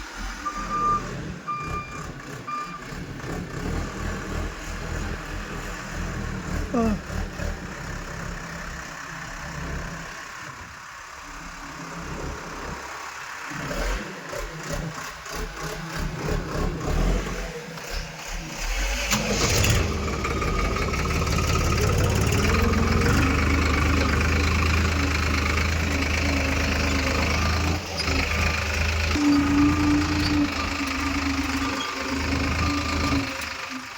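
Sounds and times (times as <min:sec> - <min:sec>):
heavy machine engine running: 0:18.6 - 0:33.9.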